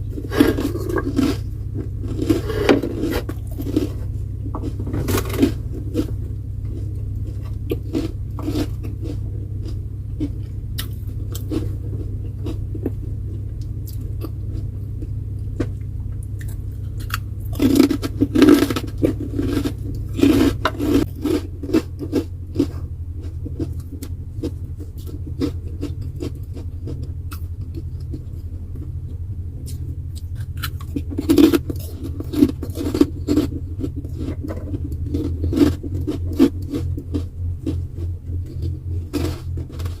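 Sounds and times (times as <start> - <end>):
chewing and crunching food: 0.0 - 40.0
steady low hum: 0.0 - 40.0.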